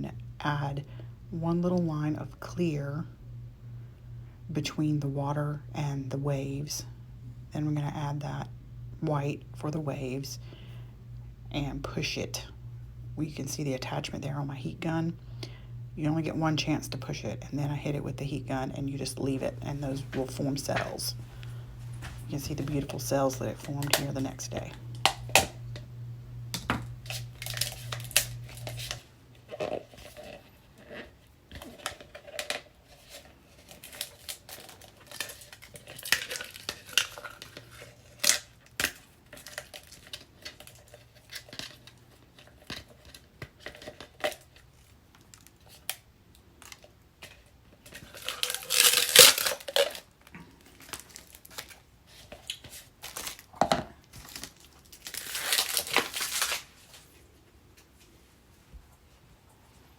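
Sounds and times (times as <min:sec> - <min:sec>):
low hum: 0:00.0 - 0:30.4
rustling and crinkling: 0:19.9 - 0:24.8, 0:27.0 - 0:59.9.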